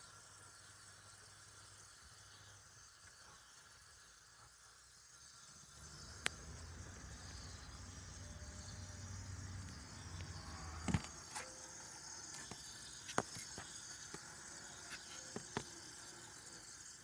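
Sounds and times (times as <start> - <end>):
faint hiss: 0.0 - 17.0.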